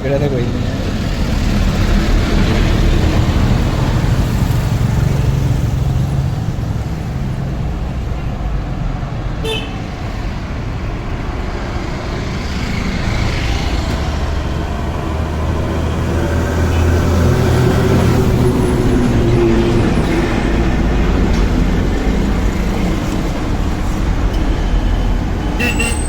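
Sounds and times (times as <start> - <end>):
motor vehicle running: 0.0 - 8.1
traffic noise: 0.0 - 26.0
high-pitched horn toot: 25.6 - 26.0.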